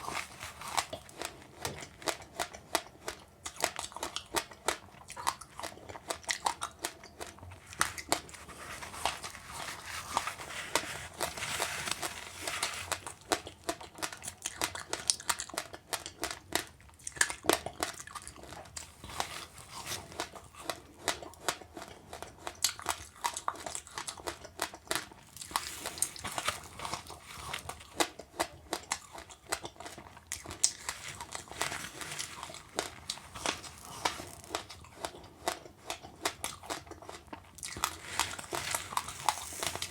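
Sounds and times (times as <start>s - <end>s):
chewing and crunching seeds: 0.0s - 39.9s.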